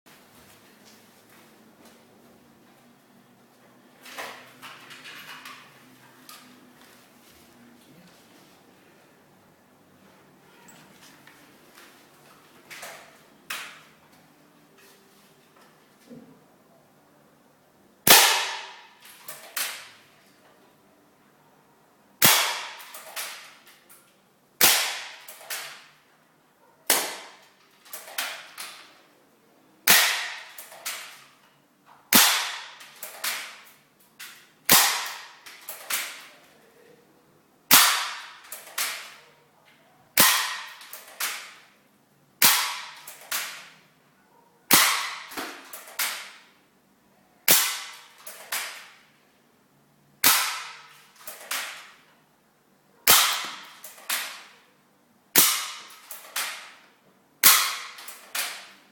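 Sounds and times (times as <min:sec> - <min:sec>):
airsoft gun shots: 0:18.0 - 0:20.0, 0:22.2 - 0:23.6, 0:24.6 - 0:25.9, 0:26.9 - 0:28.8, 0:29.9 - 0:31.2, 0:32.1 - 0:33.7, 0:34.7 - 0:36.3, 0:37.7 - 0:39.2, 0:40.2 - 0:41.6, 0:42.4 - 0:43.8, 0:44.7 - 0:46.5, 0:47.5 - 0:49.0, 0:50.2 - 0:52.0, 0:53.0 - 0:54.5, 0:55.4 - 0:56.8, 0:57.4 - 0:58.8.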